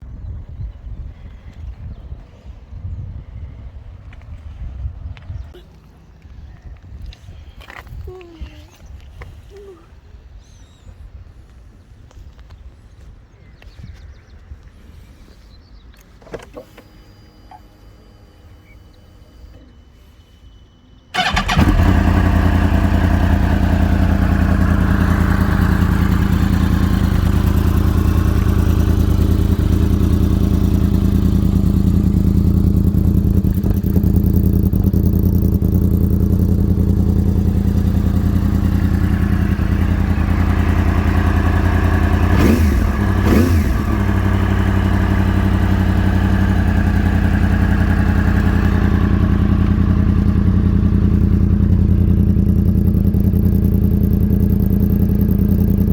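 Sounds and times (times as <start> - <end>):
motorcycle engine starting and idling: 21.0 - 55.9
motorcycle engine revving: 21.2 - 55.9.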